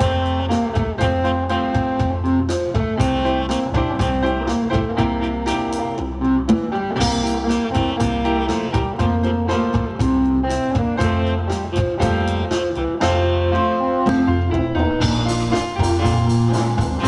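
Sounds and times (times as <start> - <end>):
bass guitar: 0.0 - 17.0
drum kit beat: 0.0 - 17.0
guitar: 0.0 - 17.0
keyboard: 0.0 - 17.0
saxophone: 0.0 - 17.0.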